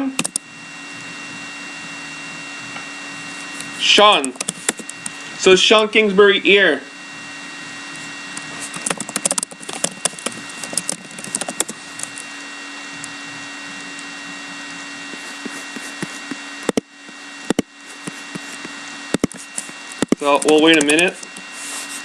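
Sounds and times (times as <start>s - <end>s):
low electrical hum: 0.0s - 22.0s
sharp clicks: 0.2s - 0.5s, 3.6s - 5.2s, 8.3s - 12.3s, 16.6s - 21.4s.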